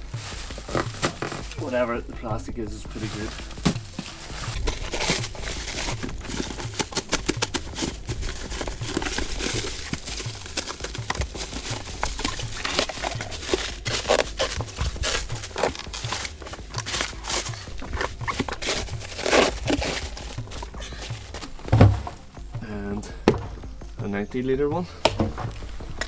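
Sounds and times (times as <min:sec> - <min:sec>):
plastic packaging rustling: 0:03.0 - 0:21.5
plastic buckets knocking: 0:04.5 - 0:22.2.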